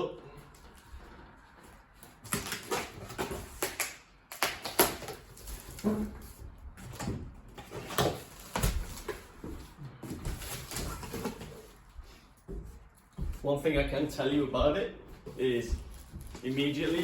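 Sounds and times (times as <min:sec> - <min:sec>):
packaging scrapes and rustles: 0:04.6 - 0:06.9, 0:07.5 - 0:09.4, 0:10.1 - 0:11.9, 0:15.9 - 0:17.0.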